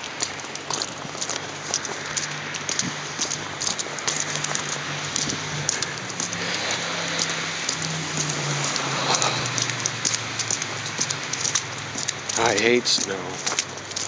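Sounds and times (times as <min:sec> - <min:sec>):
snow hissing and ticking on surfaces: 0:00.0 - 0:14.0.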